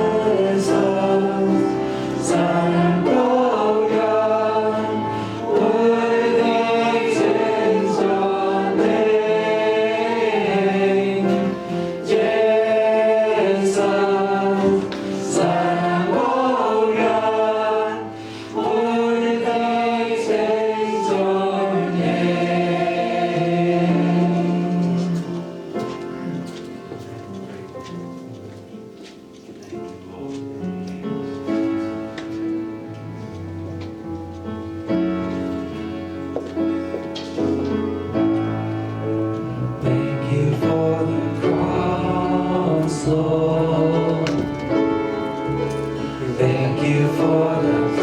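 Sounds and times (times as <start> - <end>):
group singing worship song: 0.0 - 25.7, 39.3 - 48.0.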